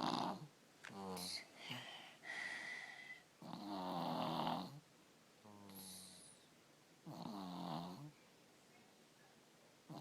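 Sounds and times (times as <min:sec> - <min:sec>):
child snoring: 0:00.0 - 0:04.8, 0:05.5 - 0:06.4, 0:07.1 - 0:08.1.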